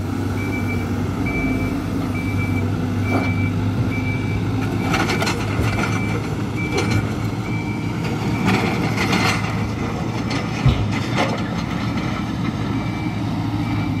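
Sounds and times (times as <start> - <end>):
diesel engine running: 0.0 - 14.0
reversing alarm beeping: 0.3 - 9.2, 12.8 - 14.0.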